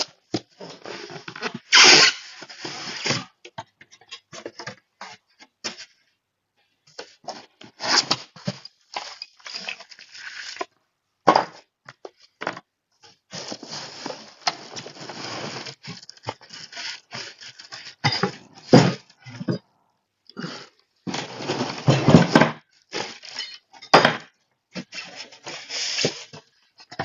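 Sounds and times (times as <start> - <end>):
packaging rustling and crinkling: 13.3 - 18.0, 21.1 - 23.5.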